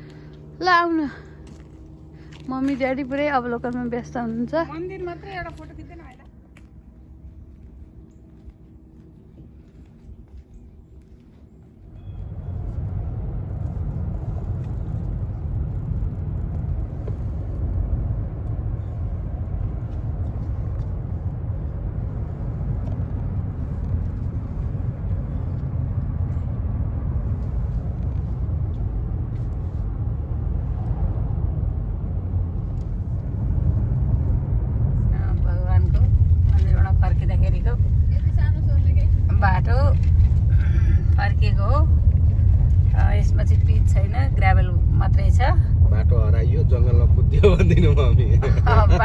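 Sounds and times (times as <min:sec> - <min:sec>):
car driving on gravel: 0:00.0 - 0:06.8, 0:12.2 - 0:49.0
gravel ticks: 0:00.0 - 0:26.5, 0:35.8 - 0:44.9.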